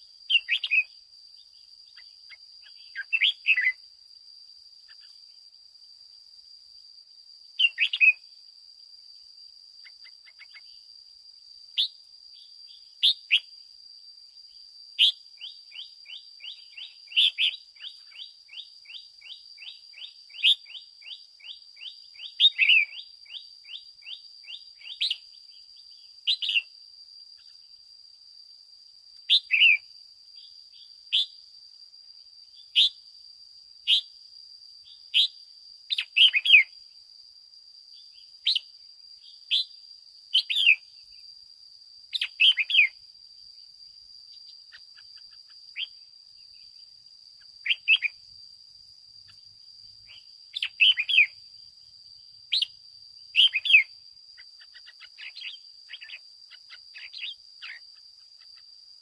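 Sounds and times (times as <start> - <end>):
bird singing whistled notes: 0.3 - 3.8, 7.5 - 8.3, 9.9 - 10.9, 11.8 - 13.5, 14.5 - 26.8, 29.2 - 31.4, 32.5 - 33.0, 34.8 - 36.8, 37.9 - 41.2, 42.1 - 43.0, 44.4 - 48.3, 50.0 - 51.4, 52.5 - 54.0, 54.6 - 58.0.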